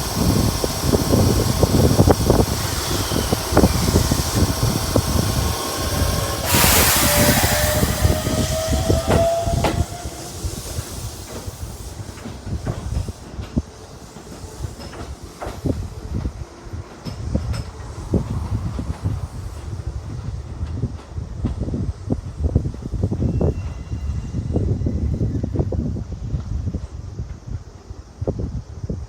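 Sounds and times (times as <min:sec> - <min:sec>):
loud hiss: 0:00.0 - 0:16.3
train wheels clacking over rail joints: 0:00.0 - 0:23.3
electric train running past: 0:00.0 - 0:29.0
rising whine: 0:00.8 - 0:10.9.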